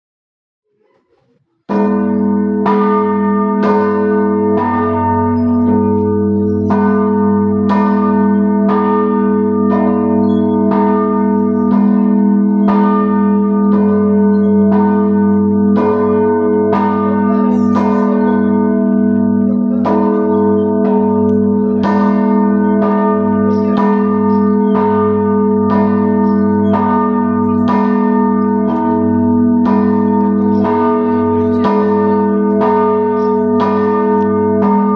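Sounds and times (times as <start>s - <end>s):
large bell ringing: 1.7s - 34.9s.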